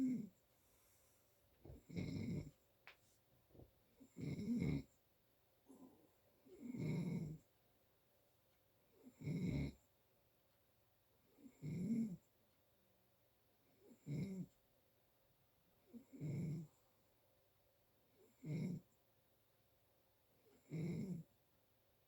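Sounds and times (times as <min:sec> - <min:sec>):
person snoring: 0:01.7 - 0:02.5.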